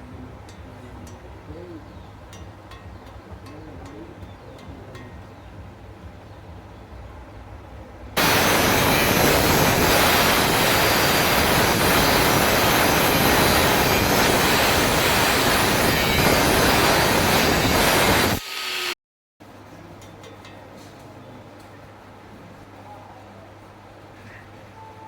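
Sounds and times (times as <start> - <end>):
welding arc burning: 8.2 - 19.0.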